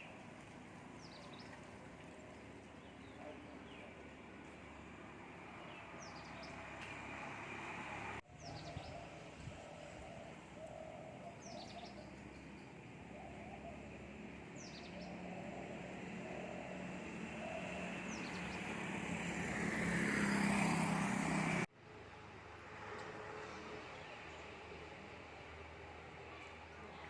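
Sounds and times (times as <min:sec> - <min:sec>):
vehicle passing by: 0:05.3 - 0:10.5, 0:11.7 - 0:21.7.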